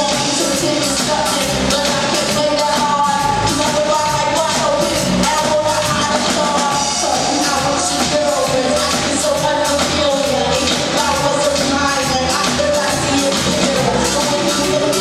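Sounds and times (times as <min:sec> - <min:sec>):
live rock band playing: 0:00.0 - 0:15.0
person singing: 0:00.0 - 0:15.0
steady drums: 0:00.0 - 0:15.0.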